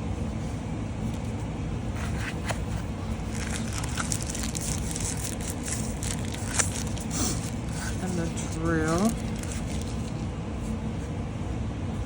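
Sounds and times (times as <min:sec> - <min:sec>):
steady low hum: 0:00.0 - 0:12.0
plastic packaging crinkling: 0:02.0 - 0:10.3.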